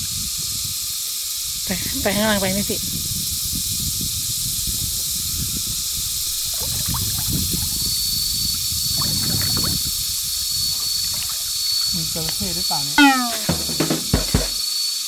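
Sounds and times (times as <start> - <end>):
thin high whine: 10.3 - 14.5.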